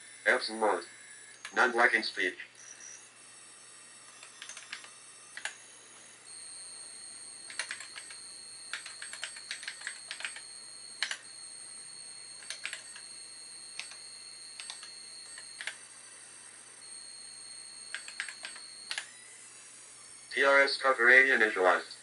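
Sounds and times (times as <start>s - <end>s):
steady high whine: 0.0s - 22.0s
keyboard typing clicks: 4.1s - 5.6s, 7.4s - 11.3s, 12.4s - 13.1s, 13.8s - 14.0s, 14.6s - 15.8s, 17.9s - 19.1s.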